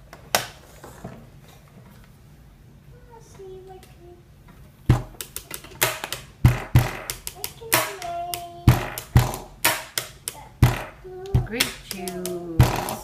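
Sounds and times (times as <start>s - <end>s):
hand slaps or claps: 5.2s - 6.3s, 7.1s - 10.8s, 11.6s - 13.0s.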